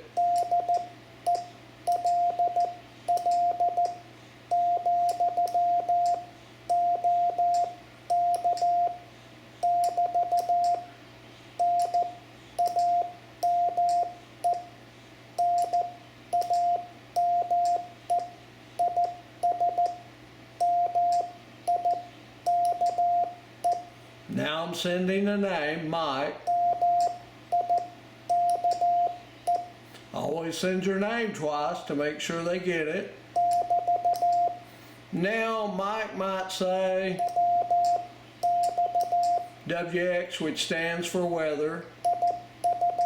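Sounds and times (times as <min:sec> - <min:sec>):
morse code tone: 0:00.1 - 0:09.0, 0:11.6 - 0:14.7, 0:15.4 - 0:20.0, 0:20.6 - 0:23.8, 0:26.5 - 0:29.7, 0:33.4 - 0:34.6, 0:37.2 - 0:39.5, 0:42.1 - 0:43.0.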